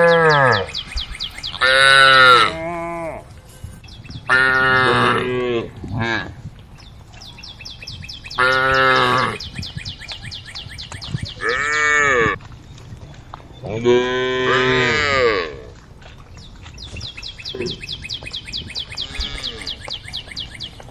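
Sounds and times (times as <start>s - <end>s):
cows mooing: 0.0s - 3.3s, 4.3s - 6.4s, 8.3s - 9.5s, 11.4s - 12.4s, 13.7s - 15.8s, 18.9s - 19.9s.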